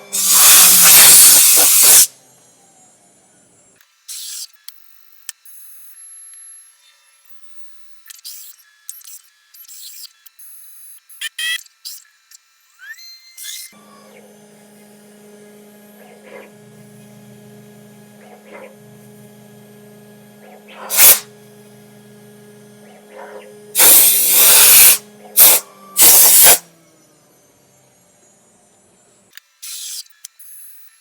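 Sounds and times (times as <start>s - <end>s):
loud hisses: 0.0s - 2.1s, 20.7s - 21.3s, 23.7s - 26.6s
machine electrical hum: 13.7s - 29.4s.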